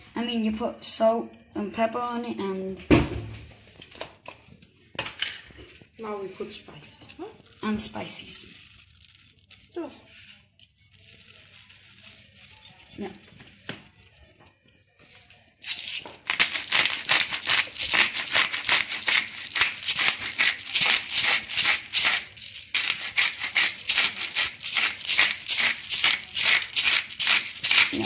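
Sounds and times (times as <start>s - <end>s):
spice shaker rattling: 10.6s - 14.3s, 15.6s - 28.0s.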